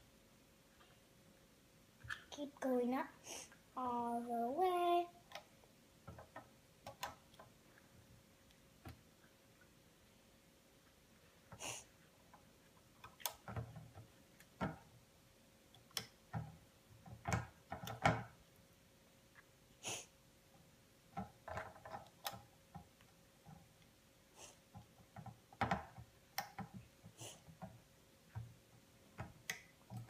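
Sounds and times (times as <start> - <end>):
person sniffing: 3.2 - 3.6, 11.6 - 12.0, 19.8 - 20.2, 24.3 - 24.6, 27.2 - 27.4.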